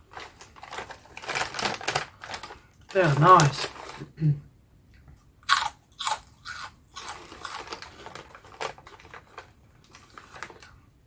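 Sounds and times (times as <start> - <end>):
crunching and chewing crisps: 0.0 - 4.1, 5.4 - 10.8.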